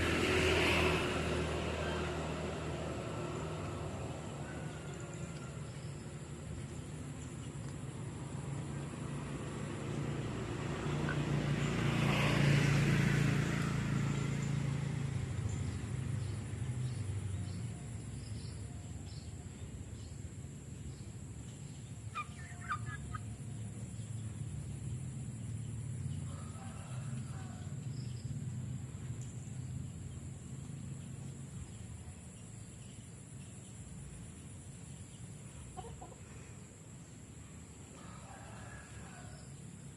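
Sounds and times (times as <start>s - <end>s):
chicken clucking: 35.8s - 36.2s.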